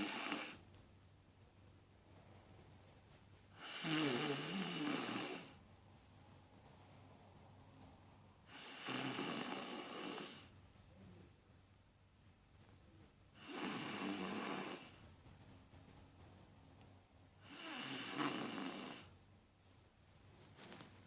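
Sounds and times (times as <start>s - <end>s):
person snoring: 0.0s - 0.6s, 3.6s - 5.6s, 8.5s - 10.5s, 13.4s - 14.9s, 17.4s - 19.1s.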